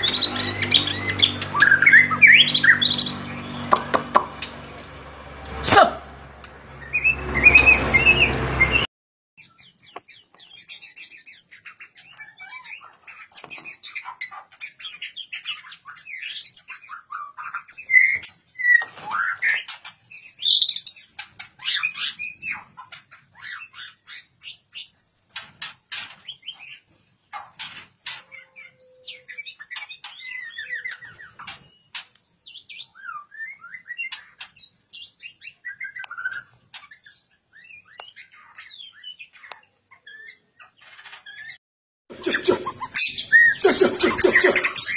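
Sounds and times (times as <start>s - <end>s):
songbird whistles and trills: 6.8s - 14.0s, 41.3s - 44.9s.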